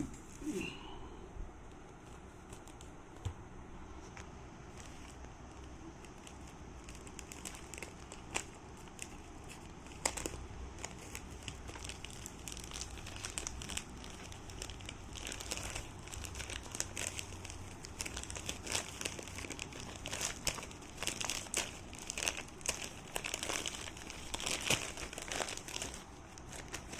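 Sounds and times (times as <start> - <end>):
packaging crinkling: 4.7 - 26.9.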